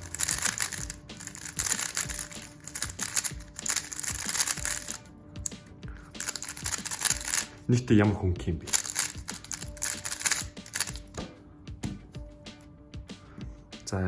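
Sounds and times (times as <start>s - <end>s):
puzzle cube clicking: 0.0s - 5.6s, 6.2s - 7.5s, 8.7s - 11.2s.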